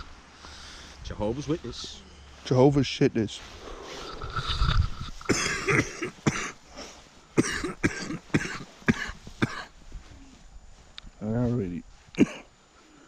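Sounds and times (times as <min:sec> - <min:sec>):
person coughing: 0:05.2 - 0:06.6, 0:07.4 - 0:09.7, 0:12.2 - 0:12.5.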